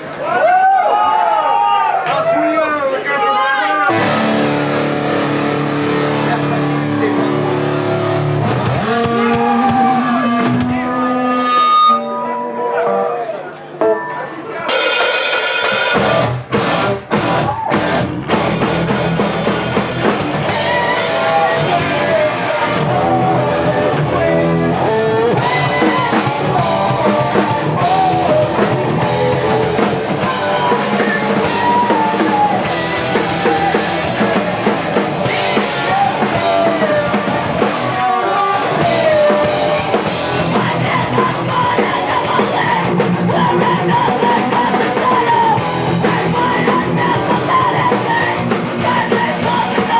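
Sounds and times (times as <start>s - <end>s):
electric guitar: 3.9s - 13.2s, 15.7s - 49.9s
live rock band playing: 3.9s - 13.2s, 13.8s - 49.9s
drum kit: 8.3s - 11.8s, 14.7s - 23.4s, 25.3s - 49.9s.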